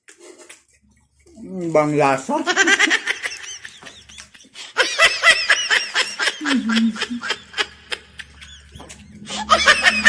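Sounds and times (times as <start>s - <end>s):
man giggling: 2.5s - 10.0s.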